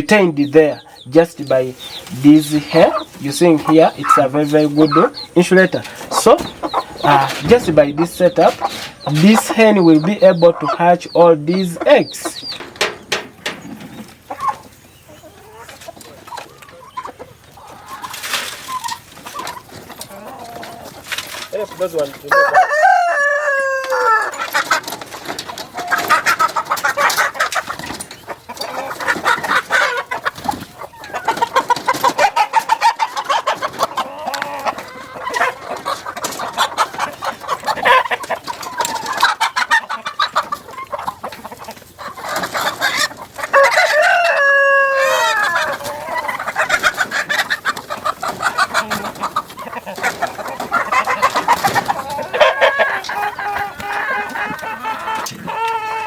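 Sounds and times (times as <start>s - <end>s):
chickens clucking: 0.0s - 56.0s
rooster crowing: 22.3s - 24.3s, 43.5s - 45.6s.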